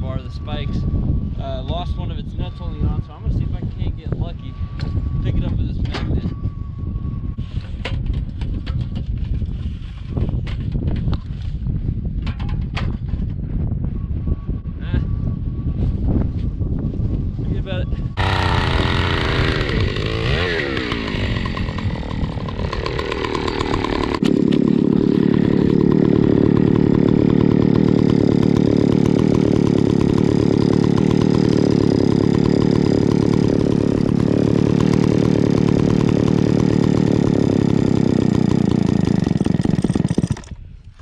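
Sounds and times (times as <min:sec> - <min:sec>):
chainsaw revving: 0:18.2 - 0:41.0.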